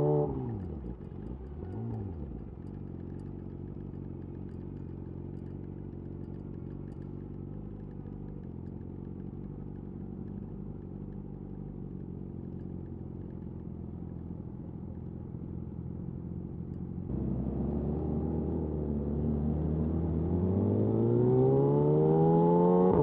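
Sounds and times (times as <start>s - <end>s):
motorcycle engine revving: 17.0s - 23.0s.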